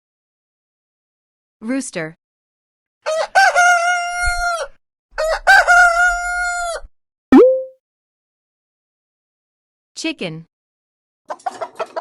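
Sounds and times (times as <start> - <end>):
rooster crowing: 3.1 - 6.8
short sharp pitched blip: 7.3 - 7.7.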